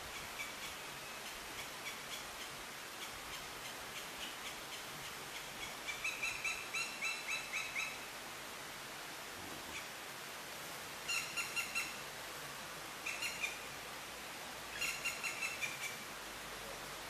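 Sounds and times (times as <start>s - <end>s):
woodpecker calling: 0.0s - 8.0s, 11.1s - 12.0s, 13.0s - 13.6s, 14.7s - 16.0s.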